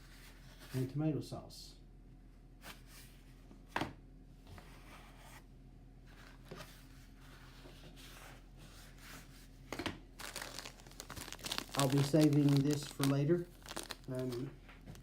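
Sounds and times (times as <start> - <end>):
plastic packets rustling: 10.2 - 15.0.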